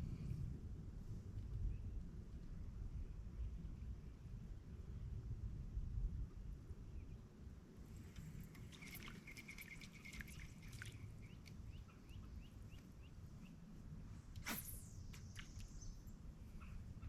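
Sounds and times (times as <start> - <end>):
birds trilling and chirping: 8.3 - 13.6
quick swish: 14.4 - 15.7.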